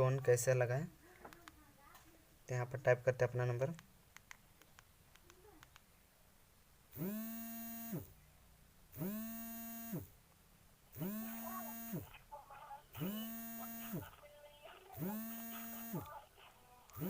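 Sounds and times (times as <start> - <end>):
mobile phone vibrating: 6.9 - 8.2, 8.9 - 10.2, 10.9 - 12.2, 12.9 - 16.2.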